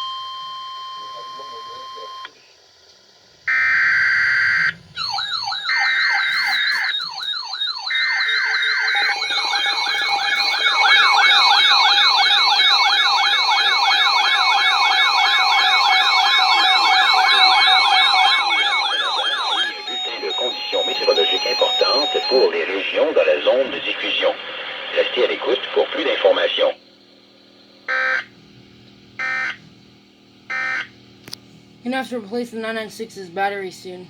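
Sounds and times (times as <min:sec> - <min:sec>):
warbling siren alarm: 0:03.5 - 0:24.3, 0:27.9 - 0:28.3, 0:29.2 - 0:29.6, 0:30.5 - 0:30.9
buzzy alert data tones: 0:03.5 - 0:24.4.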